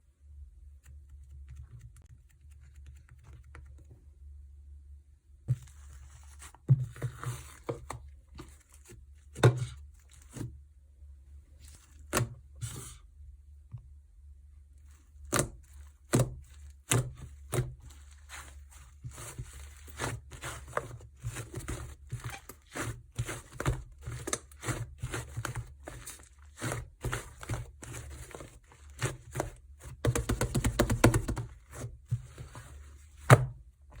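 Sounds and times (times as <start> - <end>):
steady low hum: 0.0 - 21.4.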